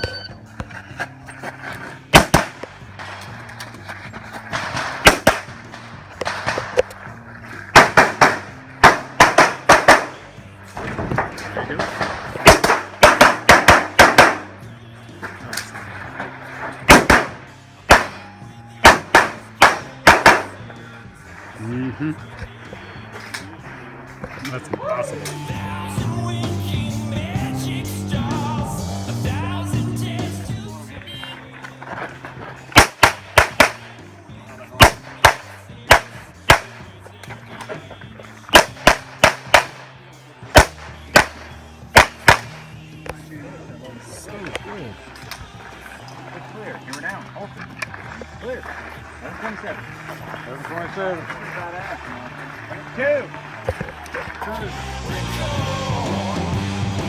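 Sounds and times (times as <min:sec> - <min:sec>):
background music with low bass: 0:00.0 - 0:57.0
handgun shots: 0:02.1 - 0:02.7, 0:04.7 - 0:05.6, 0:07.8 - 0:10.2, 0:12.4 - 0:14.5, 0:16.9 - 0:18.2, 0:18.8 - 0:20.6, 0:32.8 - 0:33.9, 0:34.8 - 0:36.8, 0:38.5 - 0:39.8, 0:40.6 - 0:42.6.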